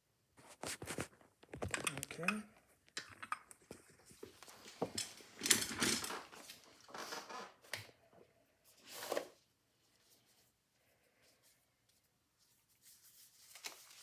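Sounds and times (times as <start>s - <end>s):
metal parts scraping and rattling: 4.4s - 6.6s.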